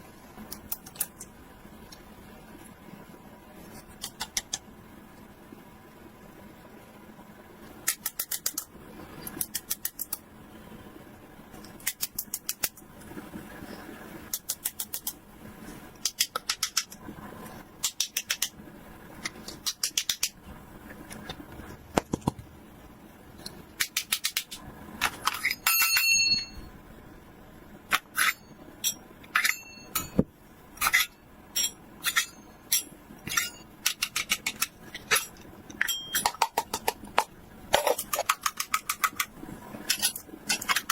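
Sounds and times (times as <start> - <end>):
plastic toy pieces clicking: 37.8 - 39.3.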